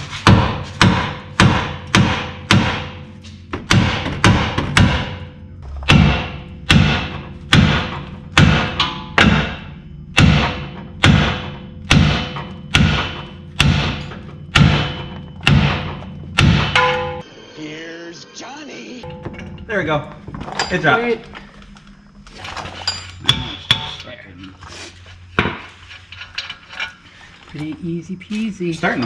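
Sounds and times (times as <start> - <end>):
hammer striking metal: 0.1 - 17.3, 23.2 - 24.0.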